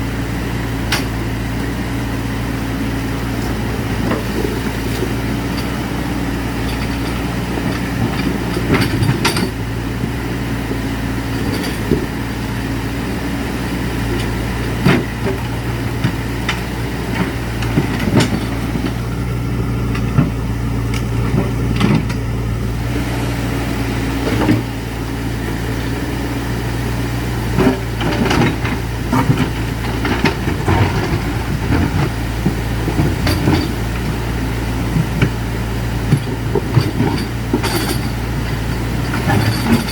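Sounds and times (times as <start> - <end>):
engine running steadily: 0.0 - 39.9
knocks and clanks: 6.5 - 12.3, 14.1 - 19.0, 19.8 - 22.3, 27.6 - 34.2, 36.0 - 39.9.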